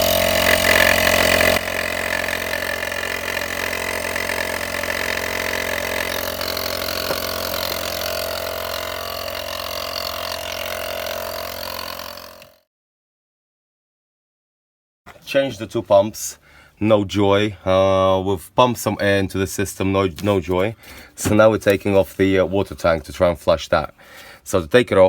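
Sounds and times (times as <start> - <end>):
air compressor humming and hissing: 0.0 - 12.4.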